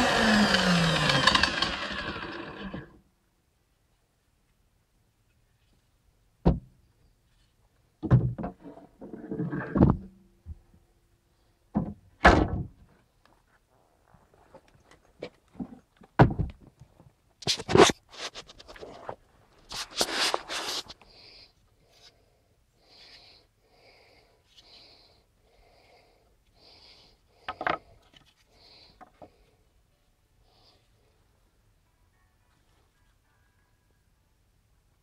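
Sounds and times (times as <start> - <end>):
tool clunking and knocking: 8.0 - 10.1, 11.7 - 12.9, 15.6 - 16.8
scraping and rustling: 17.4 - 21.0.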